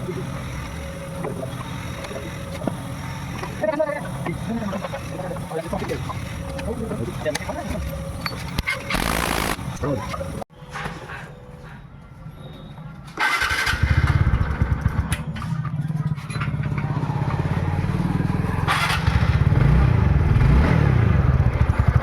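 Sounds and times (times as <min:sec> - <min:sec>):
scooter engine starting and running: 0:13.2 - 0:22.0.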